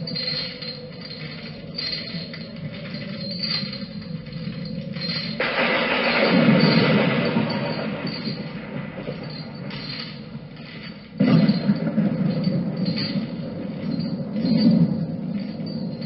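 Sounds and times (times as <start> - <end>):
thunder rumbling: 1.6 - 16.0
loud thunderclap: 5.4 - 10.4, 11.2 - 15.3.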